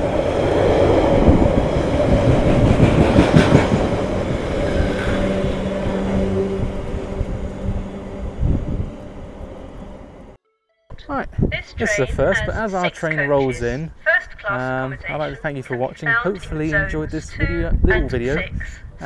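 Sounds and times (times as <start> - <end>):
freight train rumbling past: 0.0 - 10.4.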